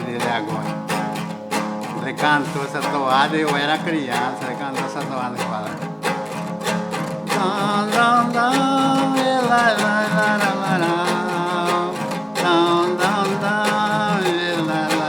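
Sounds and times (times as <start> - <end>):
strummed guitar-like lute: 0.0 - 15.0
person singing long wavering notes: 7.2 - 15.0.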